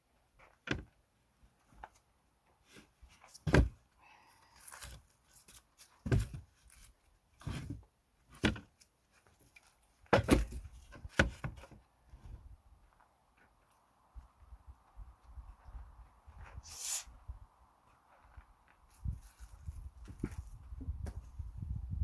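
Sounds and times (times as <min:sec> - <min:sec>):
heavy wooden thunks of logs: 0:03.4 - 0:03.9, 0:06.0 - 0:06.5, 0:10.1 - 0:12.4.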